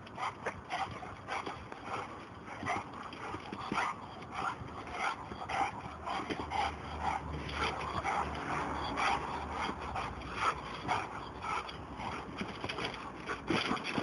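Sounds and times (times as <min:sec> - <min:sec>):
dog yipping and whining: 0:02.5 - 0:12.2.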